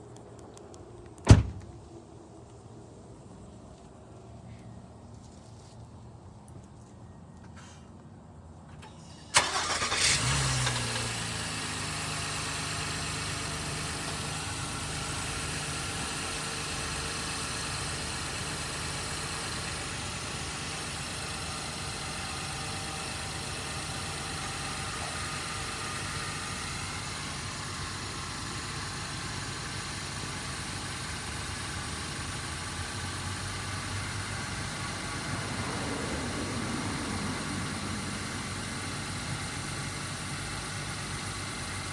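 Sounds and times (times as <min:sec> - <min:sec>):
car engine starting and idling: 0:08.7 - 0:41.9.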